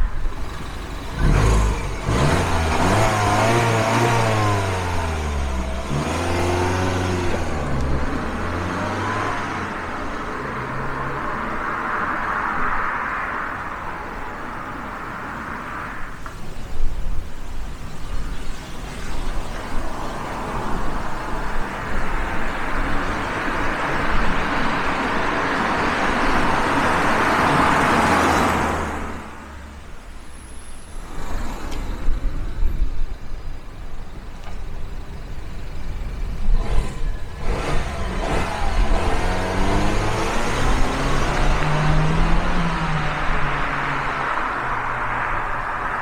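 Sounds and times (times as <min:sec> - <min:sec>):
car engine accelerating: 0:00.2 - 0:12.1, 0:22.5 - 0:32.4, 0:36.4 - 0:46.0
car rushing past: 0:00.2 - 0:16.3, 0:18.7 - 0:32.8, 0:36.5 - 0:46.0.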